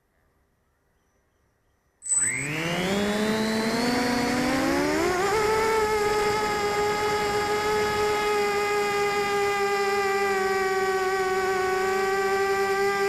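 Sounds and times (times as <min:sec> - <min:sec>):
quadcopter motors whining: 0:02.0 - 0:13.0.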